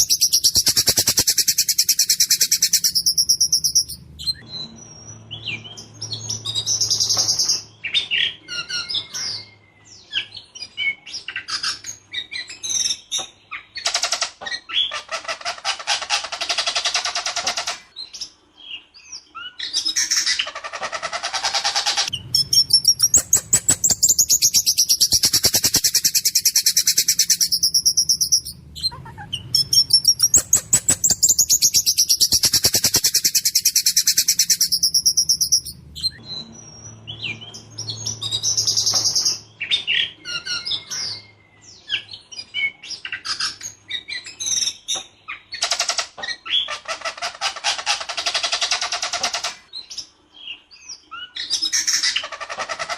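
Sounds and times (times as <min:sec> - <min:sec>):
thrush singing rattling trills: 0:00.0 - 0:07.8, 0:21.5 - 0:39.6.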